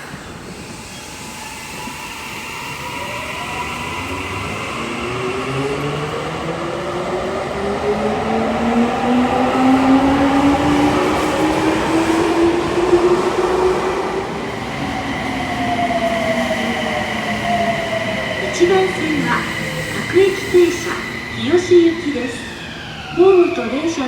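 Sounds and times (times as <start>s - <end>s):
train rumble: 2.6s - 24.0s
electric train motors whining: 12.8s - 24.0s.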